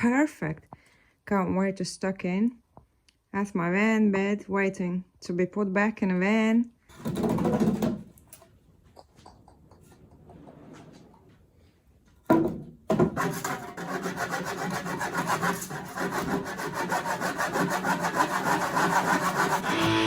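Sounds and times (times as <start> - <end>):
saw cutting through wood: 13.1 - 20.0.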